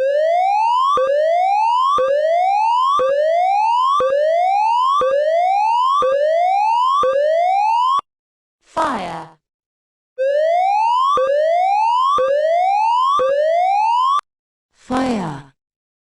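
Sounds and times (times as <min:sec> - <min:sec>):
fire alarm rising sweep tone: 0:00.0 - 0:08.1, 0:10.2 - 0:14.3.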